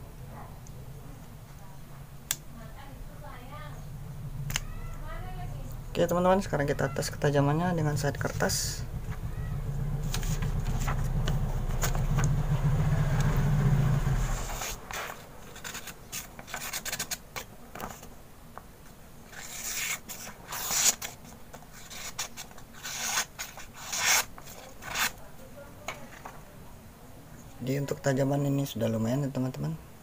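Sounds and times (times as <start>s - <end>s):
low rumble: 3.0s - 14.7s
knife slicing through paper: 19.3s - 25.2s.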